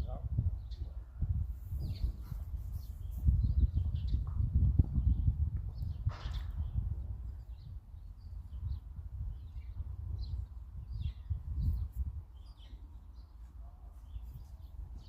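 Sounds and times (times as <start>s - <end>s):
small birds chirping: 0.0s - 1.1s, 1.7s - 15.0s.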